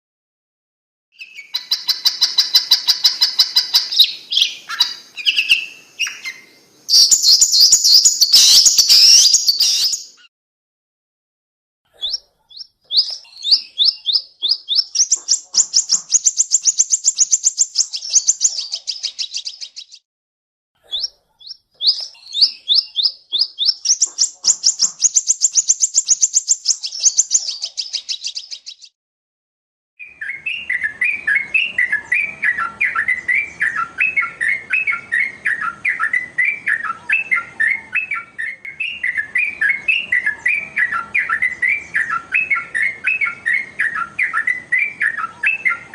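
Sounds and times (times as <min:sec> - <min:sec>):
chattering bird warble: 0:01.2 - 0:10.3, 0:11.9 - 0:20.0, 0:20.9 - 0:28.9
songbird high trills: 0:01.2 - 0:10.3, 0:12.1 - 0:20.0.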